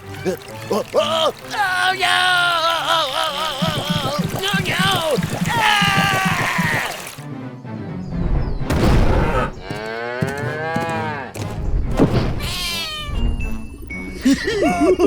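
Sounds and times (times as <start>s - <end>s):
cartoon music: 12.4s - 15.0s.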